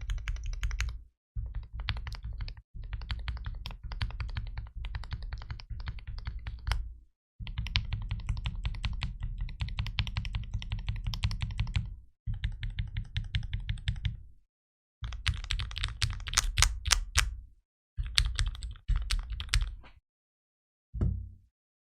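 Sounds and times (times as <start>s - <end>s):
keyboard typing: 0.0s - 6.8s, 7.5s - 14.2s, 15.0s - 17.3s, 18.0s - 19.8s.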